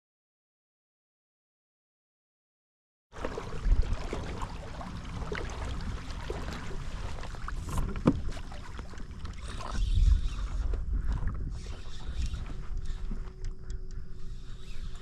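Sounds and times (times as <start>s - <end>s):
water lapping against hull: 3.2s - 15.0s
wind buffeting microphone: 3.3s - 15.0s
small knocks: 7.7s - 8.4s.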